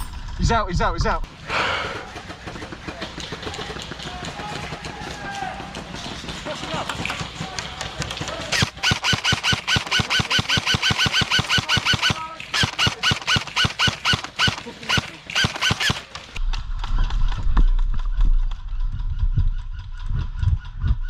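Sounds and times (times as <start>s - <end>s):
airsoft gun firing bursts: 8.3s - 16.4s
low rumble: 16.4s - 21.0s.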